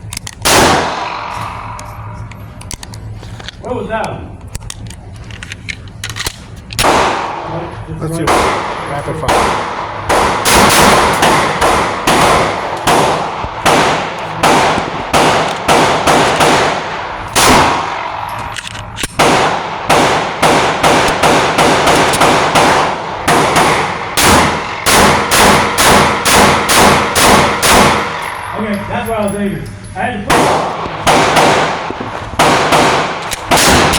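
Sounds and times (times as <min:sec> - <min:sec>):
pistol shots: 0:00.4 - 0:02.1, 0:06.8 - 0:07.6, 0:08.2 - 0:28.6, 0:30.3 - 0:33.9.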